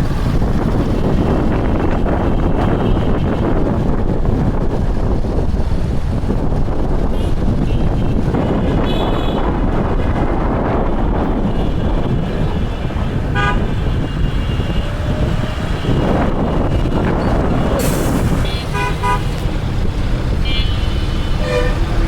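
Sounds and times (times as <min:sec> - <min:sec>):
wind buffeting microphone: 0:00.0 - 0:22.0
high vehicle horn: 0:07.2 - 0:09.6, 0:11.4 - 0:19.6, 0:20.3 - 0:22.0
short low honk: 0:16.9 - 0:19.6, 0:20.4 - 0:22.0.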